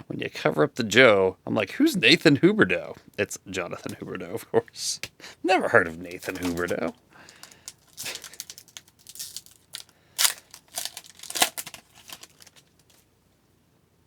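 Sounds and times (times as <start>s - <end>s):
cards rustling: 5.6s - 13.1s
foil wrapper crinkling and tearing: 5.9s - 13.0s.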